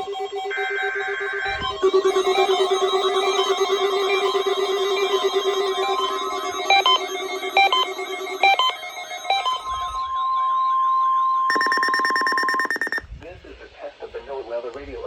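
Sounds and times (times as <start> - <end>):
harsh buzzing data burst: 0.0 - 13.0
warbling electronic tones: 0.0 - 13.0
steady alert tone: 0.6 - 13.0
short beeps: 1.4 - 13.0.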